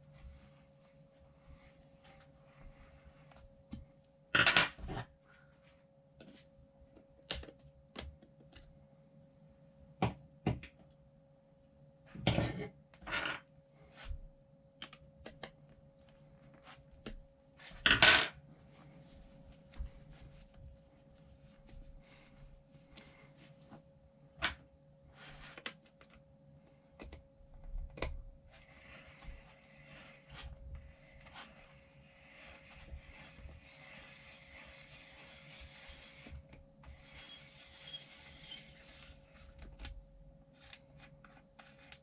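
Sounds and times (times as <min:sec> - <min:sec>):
faint steady hum: 0:00.0 - 0:42.0.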